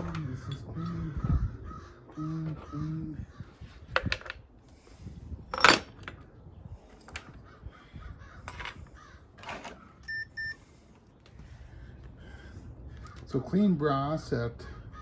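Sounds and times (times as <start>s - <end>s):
short electronic beeps: 10.1s - 10.6s.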